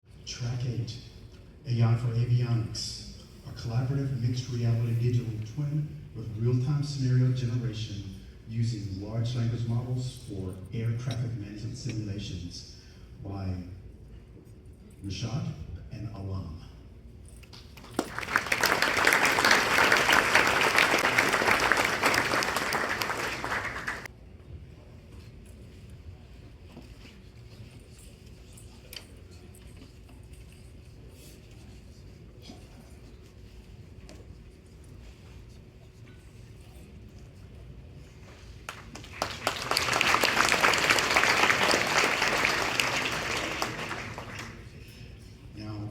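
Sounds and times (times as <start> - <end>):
audience applauding: 17.8 - 24.1, 38.7 - 44.6.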